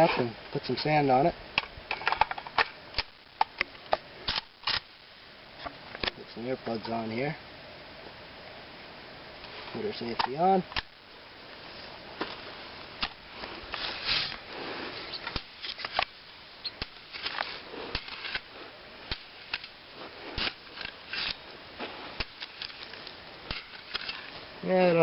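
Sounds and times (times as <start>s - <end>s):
gritty sand scraping: 9.5s - 10.7s, 11.6s - 25.0s.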